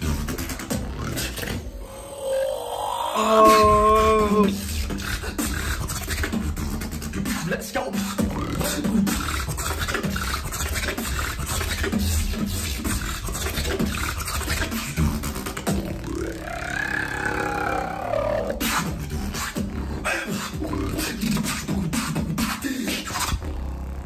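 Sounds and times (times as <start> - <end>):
beatboxing kick and snare: 0.0 - 1.7, 3.3 - 16.4, 18.4 - 24.0
pitched vocal tone: 1.7 - 4.7, 16.0 - 18.8.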